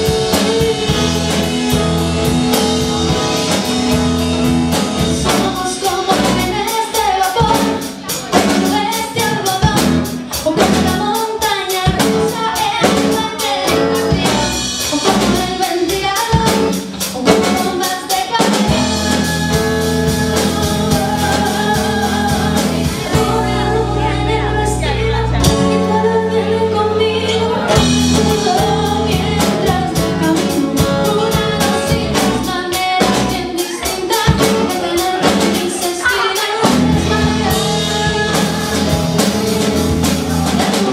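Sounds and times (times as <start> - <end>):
steady drum beat: 0.0 - 26.0, 27.7 - 40.9
person singing: 0.0 - 40.9.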